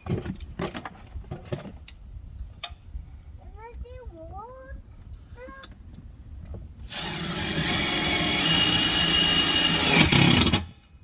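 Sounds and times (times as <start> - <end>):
power drill driving a screw: 6.9 - 10.8.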